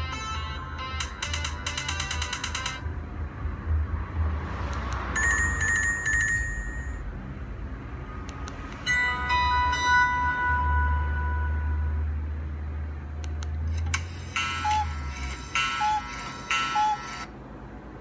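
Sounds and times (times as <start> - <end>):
polyphonic ringtone melody: 0.0 - 2.9, 5.2 - 7.1, 8.8 - 12.1, 14.1 - 17.3.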